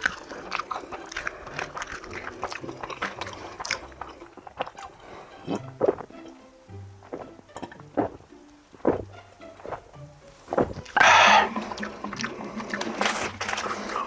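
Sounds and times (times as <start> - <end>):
crunching and chewing fried chicken: 0.0 - 4.9, 10.6 - 14.0.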